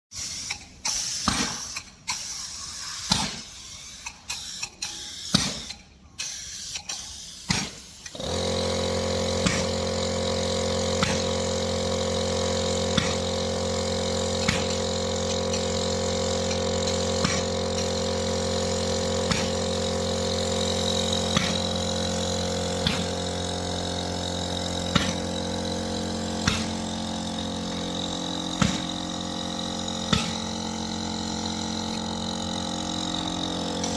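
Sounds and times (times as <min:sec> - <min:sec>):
machine motor humming: 0:08.1 - 0:33.9.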